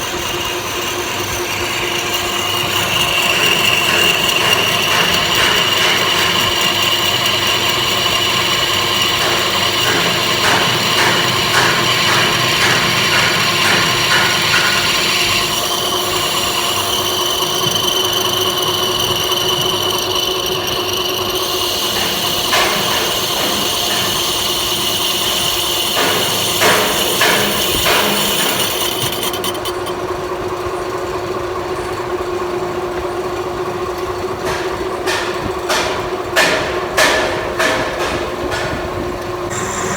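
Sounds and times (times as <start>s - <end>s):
metal lathe high whine: 0.0s - 34.4s, 39.4s - 39.9s
lathe low hum: 0.0s - 39.9s.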